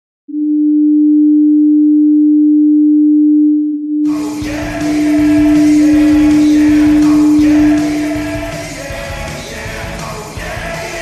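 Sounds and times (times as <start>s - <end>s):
goal horn long steady tone: 2.8s - 9.2s
song with singing: 4.0s - 11.0s.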